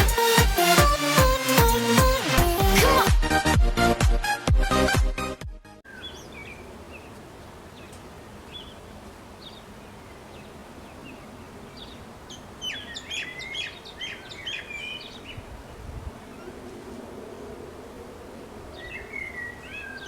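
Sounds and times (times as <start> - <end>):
birds chirping: 5.8 - 20.0
outdoor background noise: 5.8 - 20.0.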